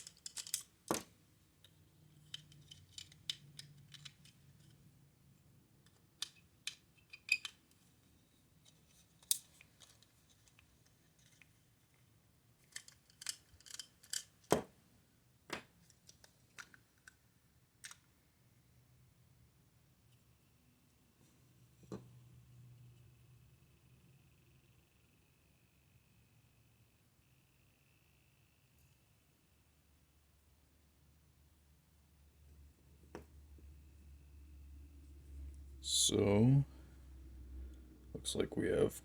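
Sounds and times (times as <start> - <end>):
plastic toy clicks and scrapes: 0.0 - 0.7, 2.2 - 4.8, 12.6 - 14.3.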